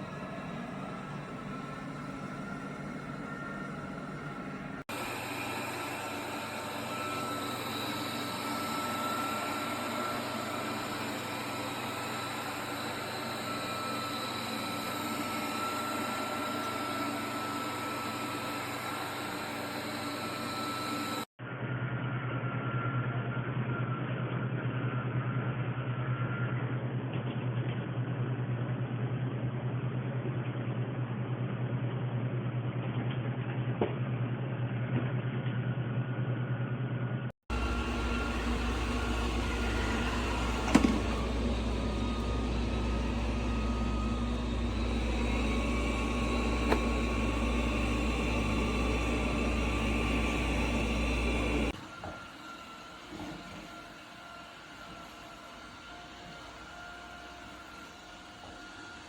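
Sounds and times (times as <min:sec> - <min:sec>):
robot vacuum cleaner whirring: 0:00.0 - 0:21.3, 0:37.5 - 0:59.0.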